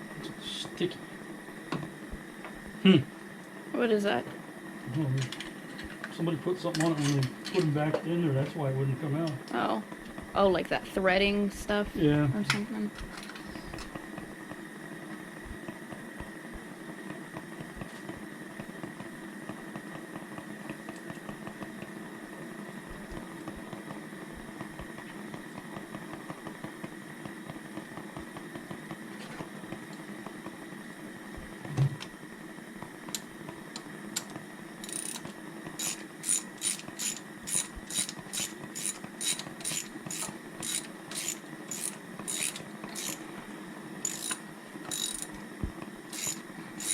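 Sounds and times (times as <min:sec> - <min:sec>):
steady low hum: 0:00.0 - 0:46.9
socket ratchet clicking: 0:34.8 - 0:43.2, 0:44.0 - 0:45.4, 0:46.2 - 0:46.9.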